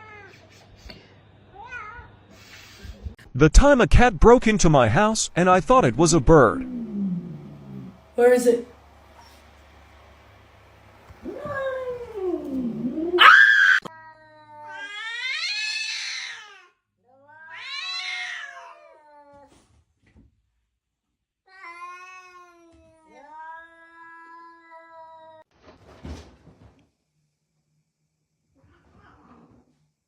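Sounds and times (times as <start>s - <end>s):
cat yowling: 6.6s - 8.0s, 11.2s - 13.9s, 14.6s - 16.6s, 17.2s - 19.0s.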